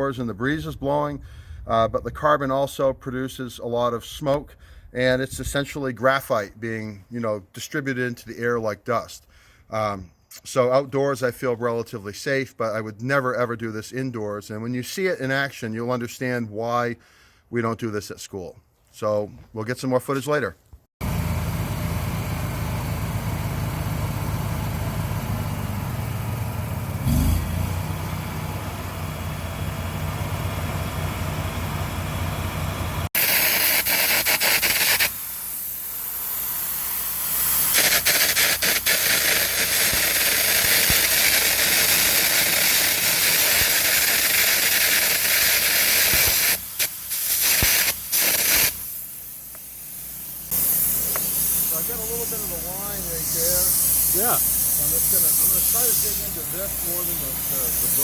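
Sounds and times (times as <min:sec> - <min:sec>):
welder engine running: 0:21.0 - 0:58.0
harsh hiss of arc gouging: 0:33.2 - 0:58.0.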